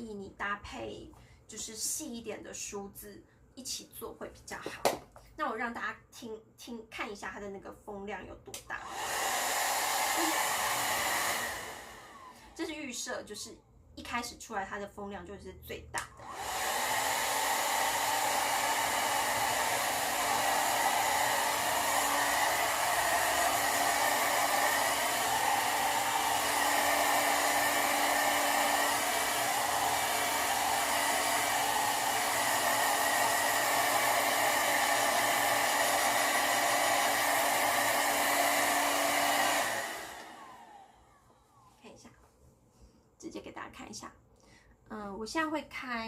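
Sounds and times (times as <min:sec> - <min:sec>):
hair dryer rushing air: 0:08.8 - 0:12.7, 0:16.2 - 0:41.7.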